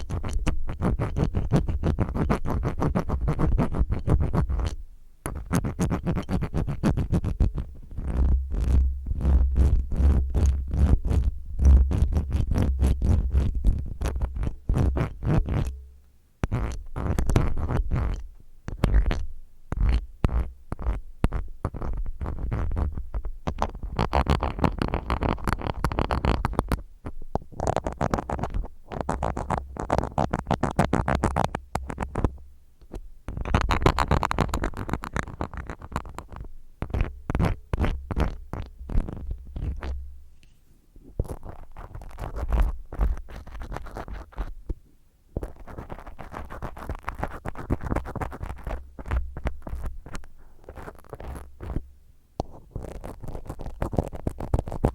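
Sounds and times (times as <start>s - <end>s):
ear cleaner scratching in ear: 0.0s - 15.7s, 16.4s - 18.2s, 27.6s - 32.3s, 33.3s - 40.0s, 41.1s - 44.5s, 45.4s - 51.8s, 52.6s - 54.9s.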